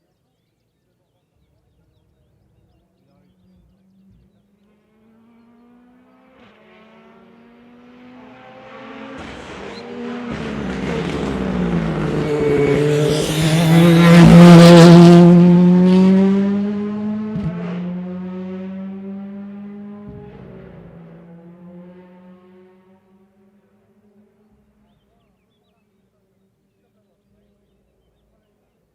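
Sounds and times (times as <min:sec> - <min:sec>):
rally car engine passing: 0:04.7 - 0:24.4.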